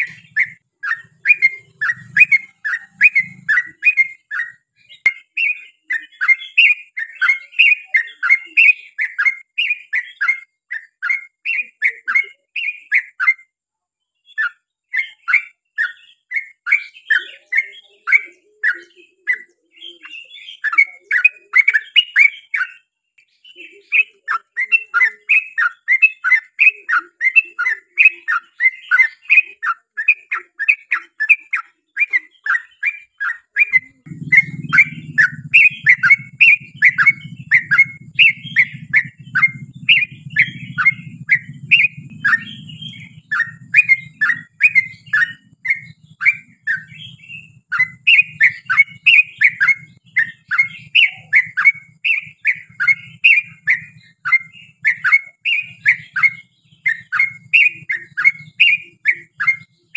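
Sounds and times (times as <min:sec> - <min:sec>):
bird singing chattering notes: 0:00.0 - 0:13.4, 0:14.2 - 0:59.9
steady low hum: 0:34.0 - 0:49.0.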